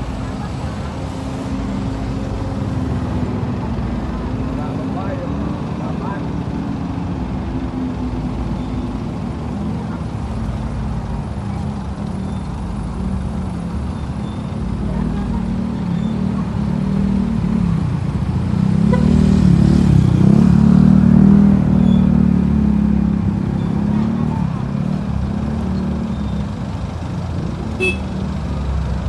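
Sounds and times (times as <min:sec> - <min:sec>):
bus engine running: 0:00.0 - 0:29.0.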